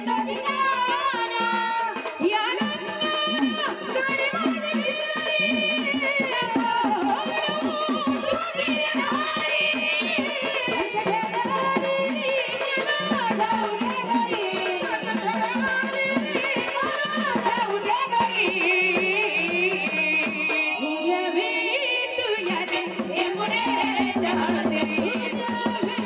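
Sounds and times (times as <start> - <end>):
fast drum and percussion beats: 0.0 - 26.0
woman singing: 0.0 - 26.0.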